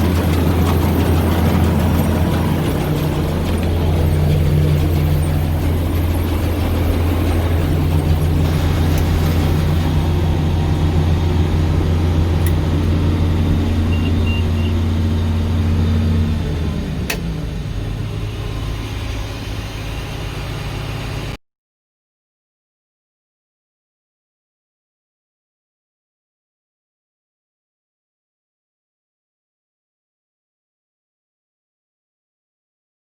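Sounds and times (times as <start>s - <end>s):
farm machine engine running: 0.0s - 21.4s.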